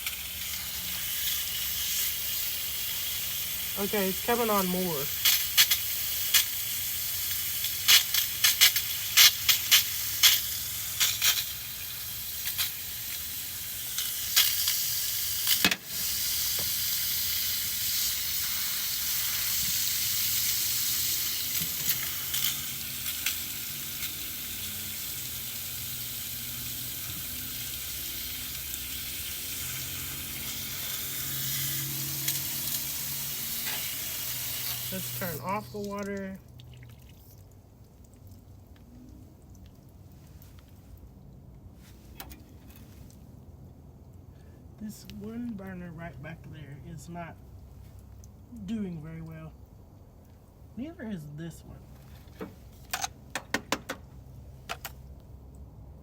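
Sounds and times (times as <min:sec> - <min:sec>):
gas burners hissing: 0:00.0 - 0:36.2.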